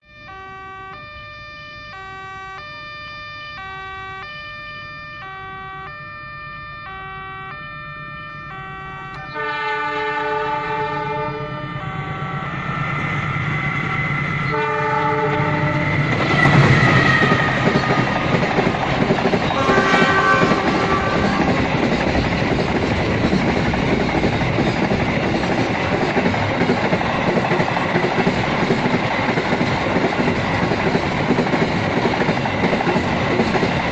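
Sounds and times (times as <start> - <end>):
level-crossing alarm two-note tone: 0.0 - 22.4
train horn blowing: 6.9 - 12.7, 14.4 - 18.3, 19.4 - 21.7
train wheels clattering on rails: 12.8 - 33.9.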